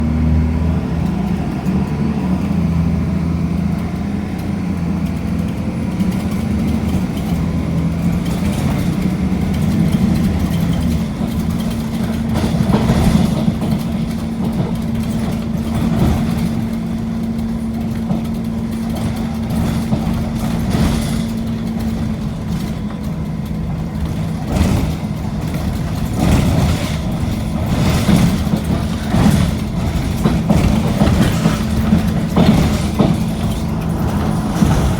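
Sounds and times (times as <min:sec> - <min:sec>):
diesel bus engine running: 0:00.0 - 0:34.9
short knocks and rattles: 0:04.9 - 0:34.9.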